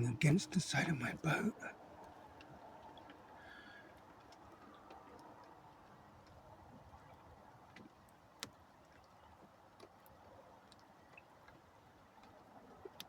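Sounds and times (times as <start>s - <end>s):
faint ticks: 0.0s - 13.0s.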